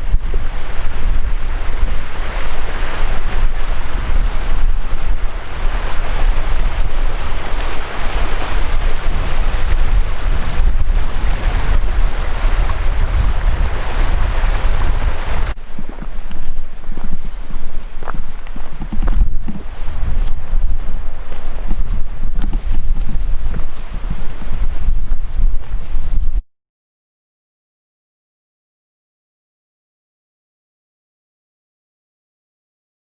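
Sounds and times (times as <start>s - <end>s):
wind buffeting microphone: 0.0s - 26.4s.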